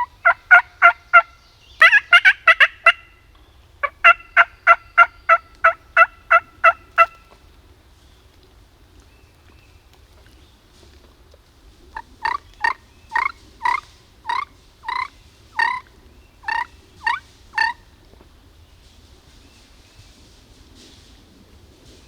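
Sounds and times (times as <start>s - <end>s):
turkey yelping: 0.0s - 3.1s, 3.8s - 7.2s, 12.0s - 17.8s.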